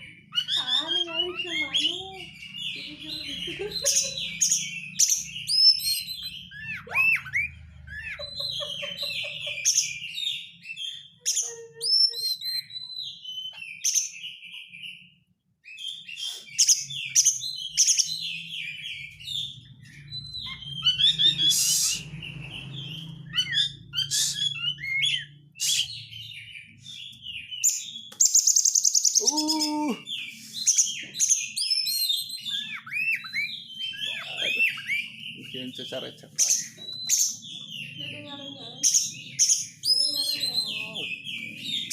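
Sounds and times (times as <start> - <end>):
bird singing whistled phrases: 0.0 - 2.8, 4.5 - 8.2, 10.0 - 15.1, 15.7 - 41.9.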